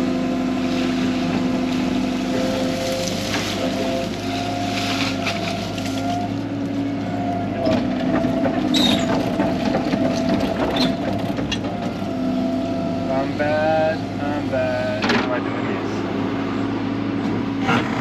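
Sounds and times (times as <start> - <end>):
excavator diesel engine running: 0.0 - 18.0
sharp knocks and clunks: 7.6 - 12.0, 15.0 - 15.4.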